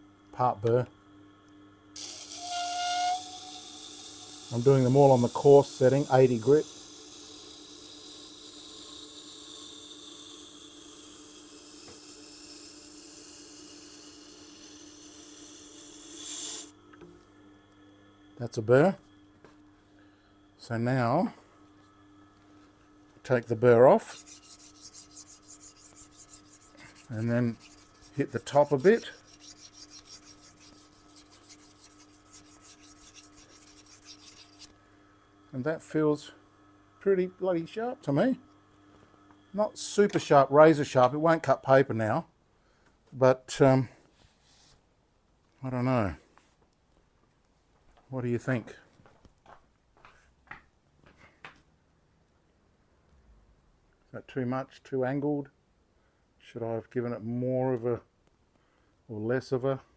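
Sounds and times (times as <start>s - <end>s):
blade scraping against abrasive: 2.0s - 9.1s, 23.6s - 34.7s
grinding machine low hum: 20.6s - 37.9s
steel grinding on wet stone: 23.8s - 34.7s.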